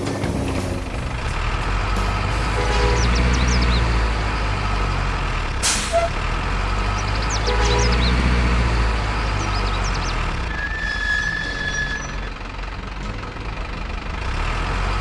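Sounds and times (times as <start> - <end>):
diesel truck engine rumbling: 0.0 - 15.0
air brake hiss: 5.6 - 6.2.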